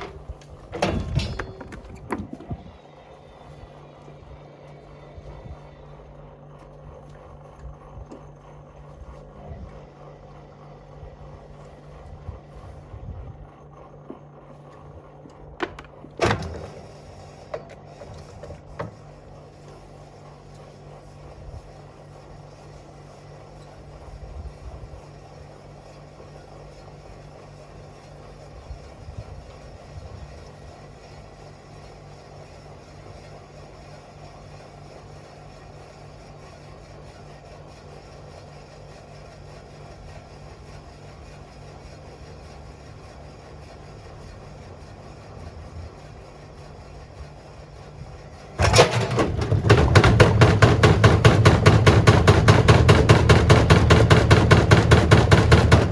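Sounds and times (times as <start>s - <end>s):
low thuds in washing machine drum: 0.0s - 2.6s, 48.6s - 55.9s
washing machine motor hum: 0.0s - 32.2s, 41.2s - 55.9s
sharp knock: 48.6s - 55.9s.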